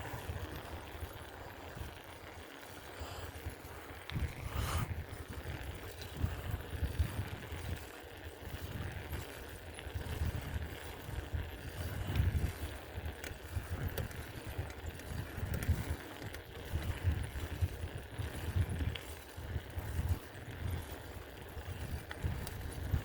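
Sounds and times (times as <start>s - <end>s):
bicycle clicks and rattles: 0.0s - 23.0s
wind on microphone: 4.1s - 9.2s, 9.9s - 12.8s, 16.6s - 23.0s.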